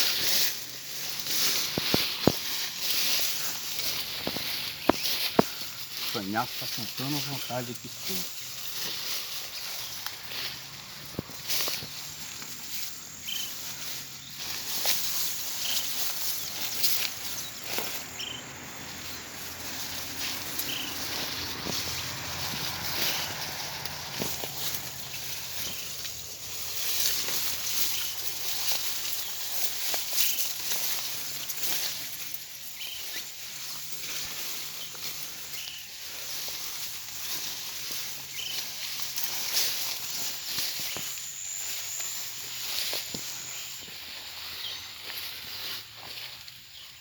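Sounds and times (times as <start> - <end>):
insects chirring: 0.0 - 47.0
rustling vegetation: 0.0 - 47.0
bird chirps: 3.0 - 6.2, 11.7 - 23.4, 32.7 - 33.8, 37.8 - 38.9, 39.8 - 45.1.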